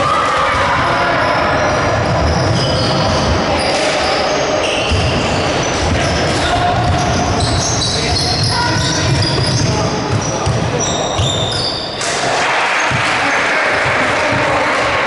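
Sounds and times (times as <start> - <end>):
sneakers squeaking: 0.0 - 15.0
voices echoing in hall: 0.0 - 15.0
basketball bouncing on court floor: 5.8 - 11.5.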